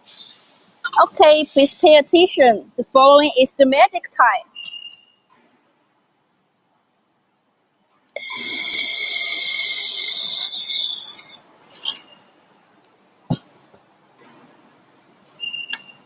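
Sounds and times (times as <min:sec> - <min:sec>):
laser welder hissing: 0:08.2 - 0:11.4.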